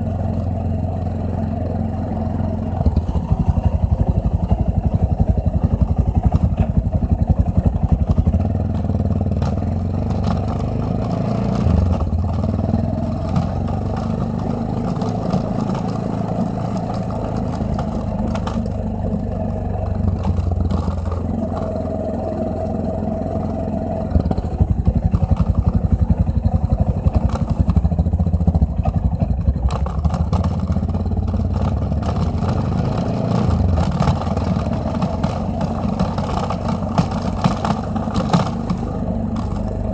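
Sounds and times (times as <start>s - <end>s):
motorcycle engine running: 0.0s - 39.9s
top case rattling: 33.5s - 39.8s.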